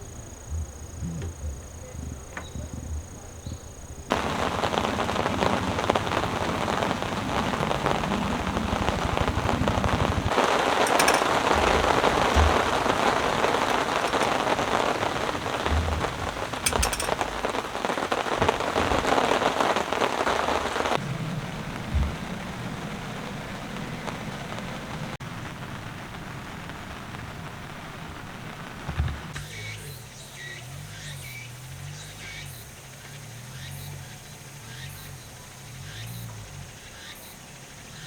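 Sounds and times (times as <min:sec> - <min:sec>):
low thumps: 0:00.0 - 0:04.9, 0:08.2 - 0:21.0
heavy rain pouring: 0:00.0 - 0:29.9.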